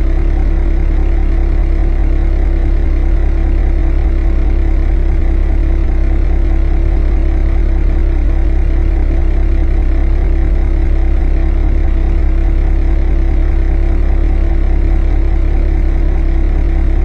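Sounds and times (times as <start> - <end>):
car engine droning: 0.0 - 17.0.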